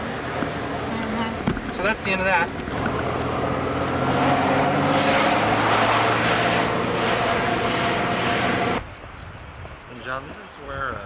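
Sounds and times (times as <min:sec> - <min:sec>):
engine droning: 0:00.0 - 0:08.8.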